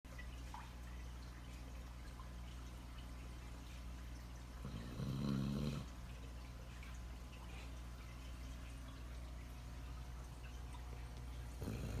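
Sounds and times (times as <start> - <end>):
puppy snoring: 4.6 - 5.9, 11.5 - 12.0.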